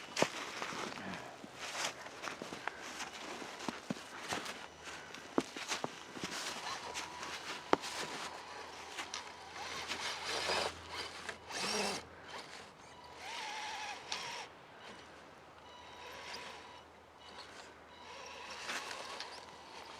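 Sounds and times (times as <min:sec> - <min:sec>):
electric motor whirring: 0:06.5 - 0:15.1, 0:15.7 - 0:19.9.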